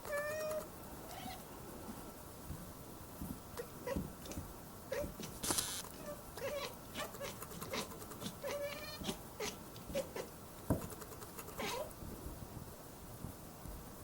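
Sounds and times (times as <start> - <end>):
cats mewing: 0.0 - 1.5, 3.6 - 12.0
rustling: 0.0 - 12.7.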